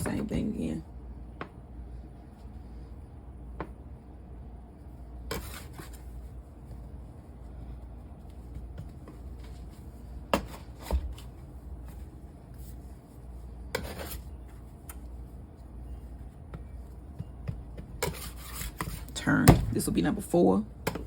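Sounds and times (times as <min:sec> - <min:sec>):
utensil scraping: 0:13.6 - 0:15.2, 0:17.7 - 0:19.9.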